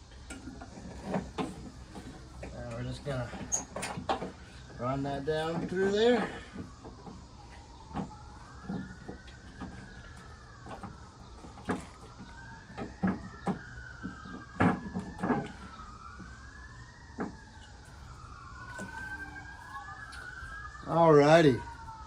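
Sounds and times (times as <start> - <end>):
emergency vehicle siren wailing: 0.0 - 22.0
clicks and knocks on tailgate: 12.8 - 15.6.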